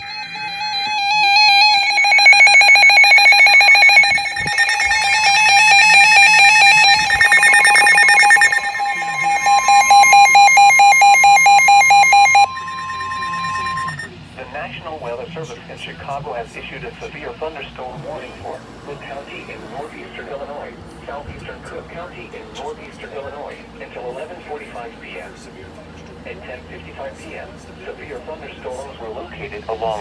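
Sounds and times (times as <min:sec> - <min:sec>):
pulsing electronic alarm beeps: 0:00.0 - 0:14.1, 0:18.0 - 0:27.1
steady warning tone: 0:00.0 - 0:14.1, 0:17.6 - 0:30.0.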